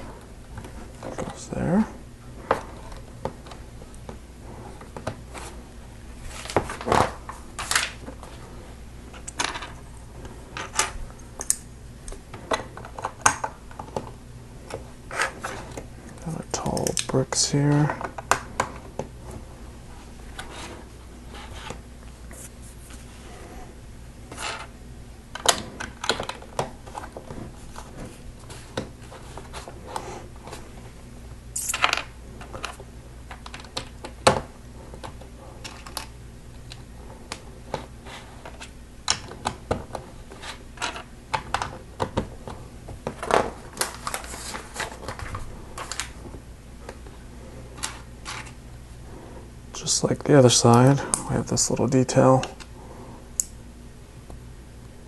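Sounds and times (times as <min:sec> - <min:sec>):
low steady hum: 0:00.0 - 0:55.0.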